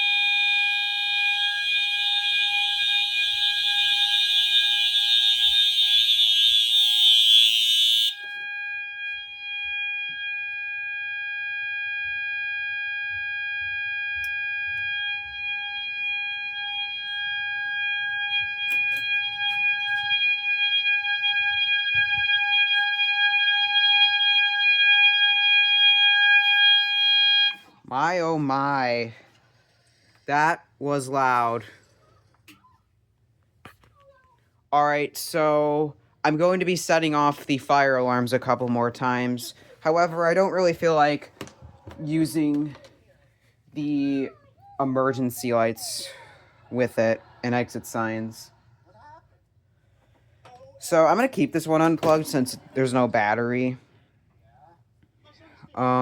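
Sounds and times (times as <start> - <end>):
harsh buzzing alarm tone: 0.0 - 27.7
fire alarm horns sounding: 0.0 - 27.8, 50.8 - 54.0.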